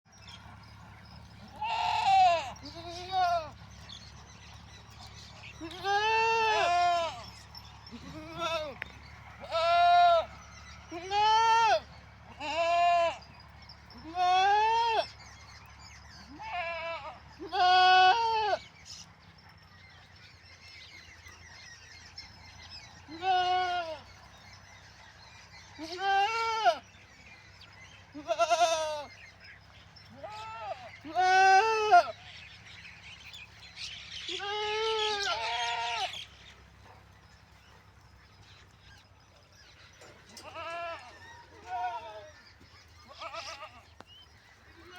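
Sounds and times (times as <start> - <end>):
goats bleating: 1.4 - 3.8, 5.0 - 13.3, 14.0 - 15.1, 16.2 - 18.6, 23.1 - 24.1, 25.8 - 26.8, 28.1 - 29.2, 30.1 - 32.3, 34.1 - 36.5, 40.3 - 44.9.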